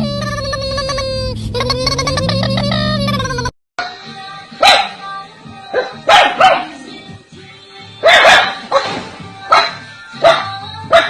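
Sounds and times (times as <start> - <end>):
background music: 0.0 - 11.0
dog barking: 4.6 - 5.0, 5.7 - 6.8, 8.0 - 11.0.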